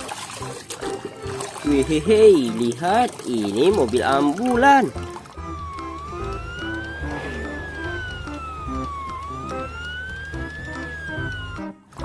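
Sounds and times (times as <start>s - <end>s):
background music: 0.0s - 12.0s
ambulance siren wailing: 4.8s - 12.0s.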